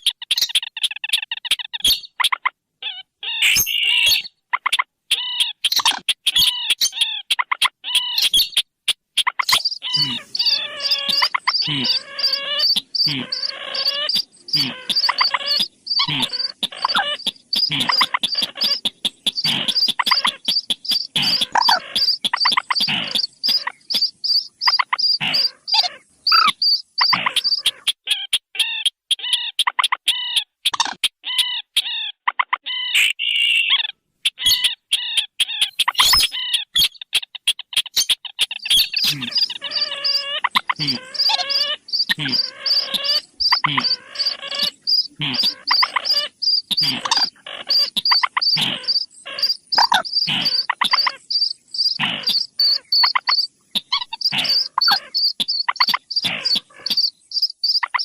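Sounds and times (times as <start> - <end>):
rapid pulsed bird notes: 9.4 - 28.0, 37.6 - 58.0
croaking rail calls: 9.5 - 28.0, 38.4 - 58.0.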